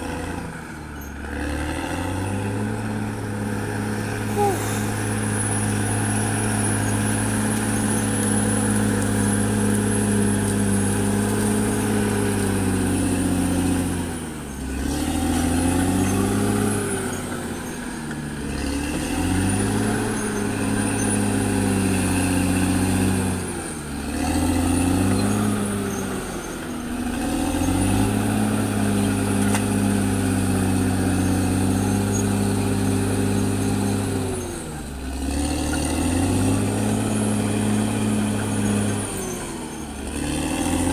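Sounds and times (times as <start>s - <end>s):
bulldozer diesel engine working: 0.0s - 40.9s.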